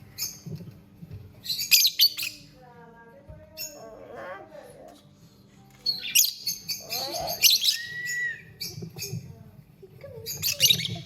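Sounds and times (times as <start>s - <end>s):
lovebird chirping: 1.4s - 2.5s, 5.8s - 9.2s, 10.2s - 11.0s.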